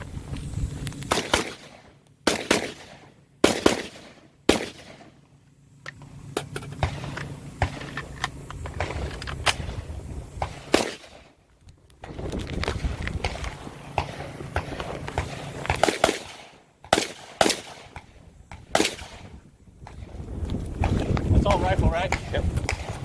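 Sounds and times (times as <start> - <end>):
gunshots with echo: 14.0 - 18.1.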